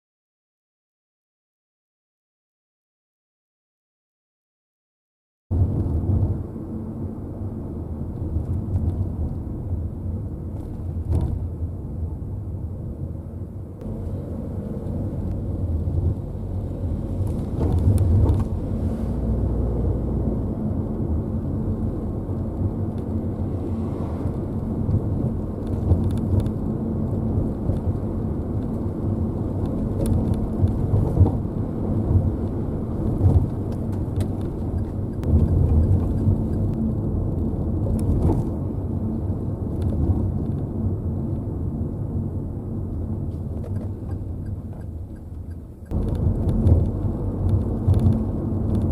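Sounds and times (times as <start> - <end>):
road rumble inside car: 5.5 - 48.9
rattles and clunks in car: 10.4 - 11.6, 13.8 - 19.8, 22.4 - 36.9, 37.8 - 40.7, 43.3 - 48.9.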